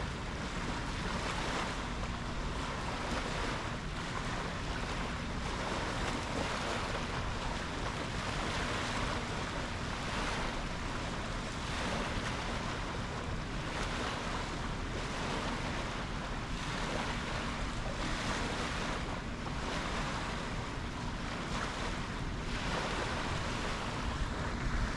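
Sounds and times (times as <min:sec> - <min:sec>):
ocean waves breaking: 0:00.0 - 0:24.9
wind on microphone: 0:00.0 - 0:24.9.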